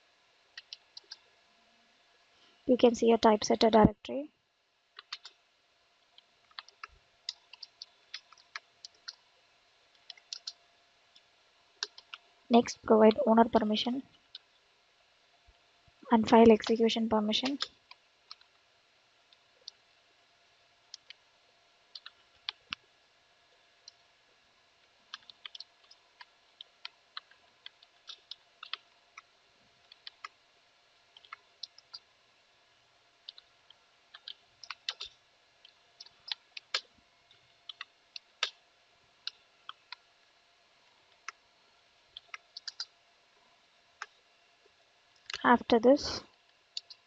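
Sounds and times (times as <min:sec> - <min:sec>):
keyboard keystrokes clicking: 0:05.0 - 0:05.4, 0:34.1 - 0:35.1.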